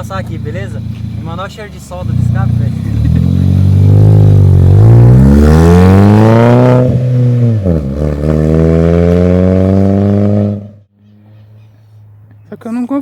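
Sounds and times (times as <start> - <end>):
car engine revving hard: 2.1 - 10.8.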